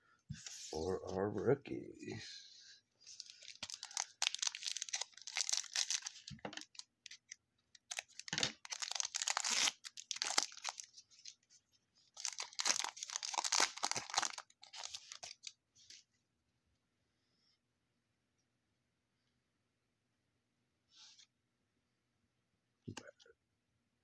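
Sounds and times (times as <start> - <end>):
foil wrapper tearing and crinkling: 3.1 - 11.0, 12.2 - 15.5.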